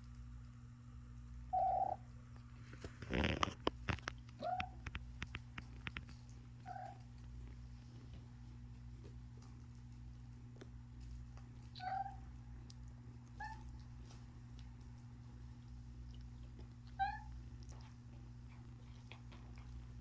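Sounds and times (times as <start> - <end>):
kitten mewing: 1.5 - 2.0.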